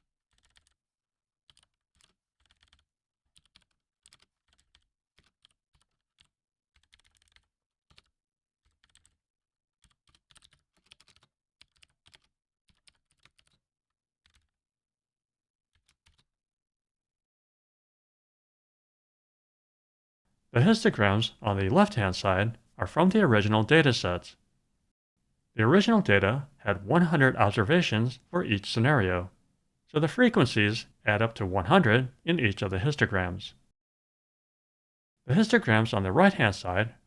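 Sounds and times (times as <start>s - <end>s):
faint keyboard typing: 0.3s - 0.8s, 1.5s - 2.8s, 3.4s - 9.2s, 9.8s - 13.6s.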